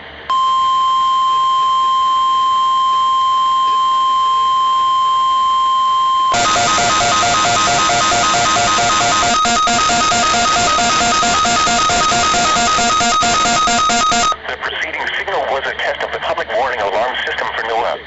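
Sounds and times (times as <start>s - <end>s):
rapid pulsing two-pitch alarm: 0.3s - 14.4s
steady warning beep: 0.3s - 14.4s.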